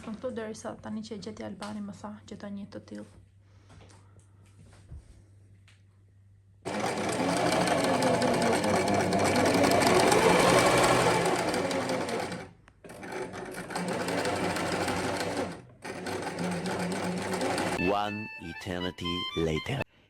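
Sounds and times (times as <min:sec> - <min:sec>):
sewing machine stitching: 0:06.7 - 0:17.8.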